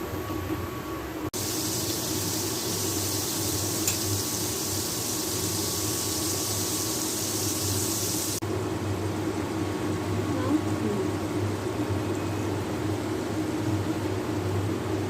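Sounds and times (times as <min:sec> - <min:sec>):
food sizzling in hot oil: 0:01.4 - 0:08.4.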